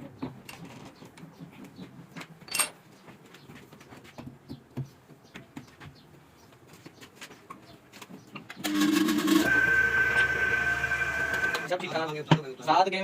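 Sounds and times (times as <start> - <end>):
metal tools clicking and knocking: 2.4 - 2.8.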